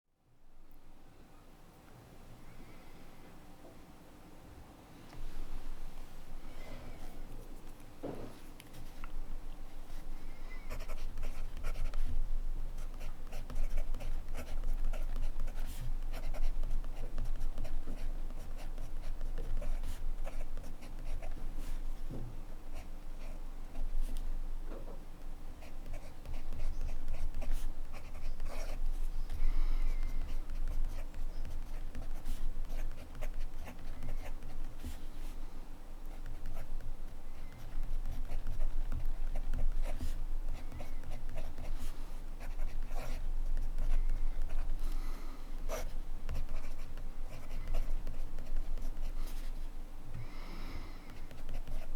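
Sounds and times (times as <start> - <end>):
pen nib scratching paper: 10.7 - 12.2, 25.6 - 29.4, 30.0 - 35.0, 36.1 - 36.9, 37.5 - 44.8, 45.6 - 49.6, 51.1 - 51.9.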